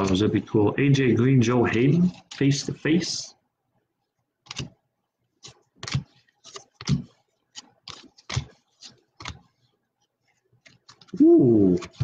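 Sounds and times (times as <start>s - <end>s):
trading cards flipping and slapping: 4.4s - 4.8s, 5.4s - 12.0s.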